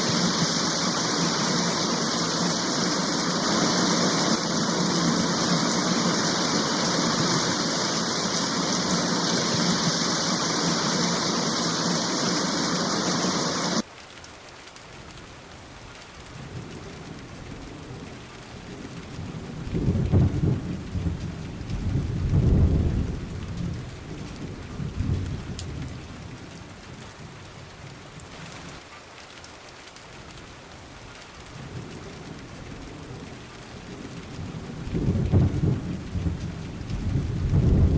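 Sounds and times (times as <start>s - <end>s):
rolling thunder rumbles: 0.0s - 13.8s, 16.4s - 26.4s, 31.6s - 37.9s
heavy rain rushing: 0.0s - 37.9s
steady rain: 0.0s - 37.9s.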